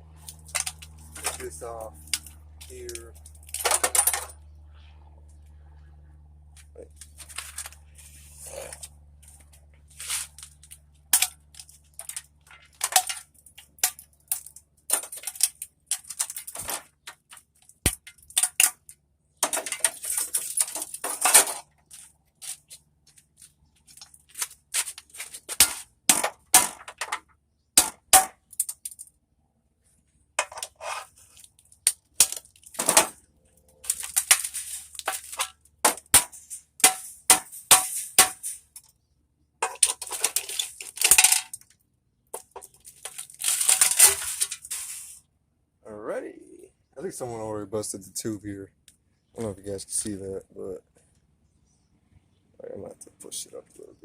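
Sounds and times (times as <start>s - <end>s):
hand tools clanking on metal: 0.3s - 4.4s, 33.8s - 38.6s, 39.6s - 41.6s.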